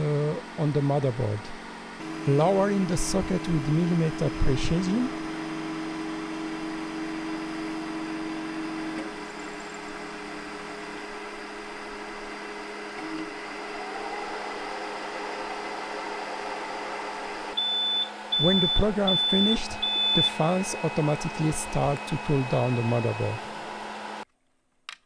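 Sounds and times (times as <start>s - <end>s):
even whirring: 0.0s - 7.4s, 13.0s - 24.2s
machine motor hum: 0.0s - 24.2s.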